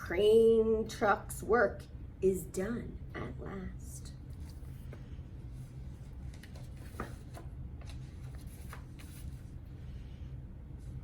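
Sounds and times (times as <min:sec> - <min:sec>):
low steady hum: 0:00.0 - 0:11.0
paper pages rustling: 0:04.3 - 0:05.0, 0:05.6 - 0:09.6.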